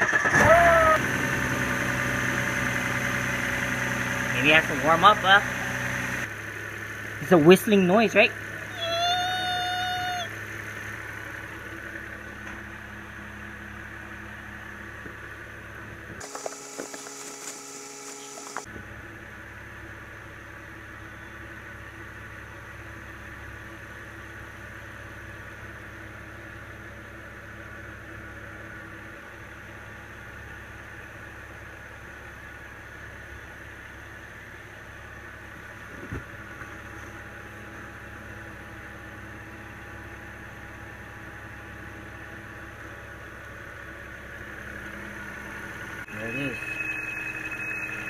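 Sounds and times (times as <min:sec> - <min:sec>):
car engine idling: 0:00.0 - 0:48.0
high thin whistle: 0:46.1 - 0:48.0.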